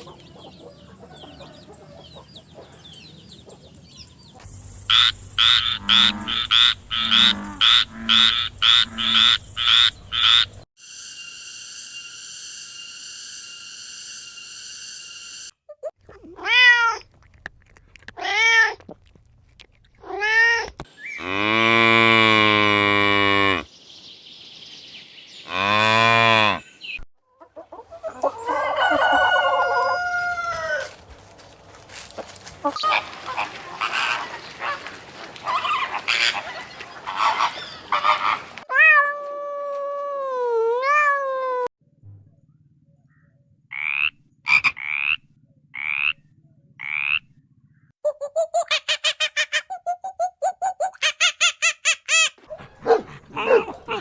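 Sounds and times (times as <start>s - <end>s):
steady held tone: 10.8s - 15.6s
cat meowing: 38.7s - 39.7s, 40.7s - 41.7s.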